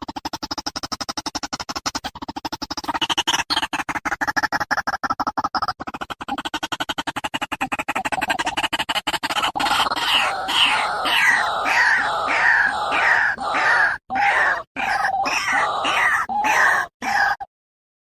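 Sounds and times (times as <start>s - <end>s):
waterhen calling: 9.6s - 17.4s.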